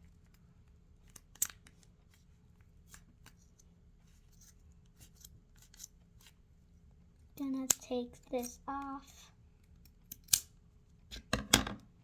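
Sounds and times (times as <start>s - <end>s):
scissors snipping: 7.4s - 8.9s, 9.8s - 10.5s.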